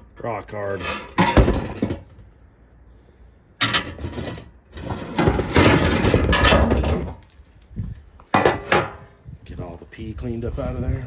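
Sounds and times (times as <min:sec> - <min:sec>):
parts rubbing and scraping: 0:00.5 - 0:02.2, 0:03.6 - 0:07.6, 0:08.2 - 0:09.1.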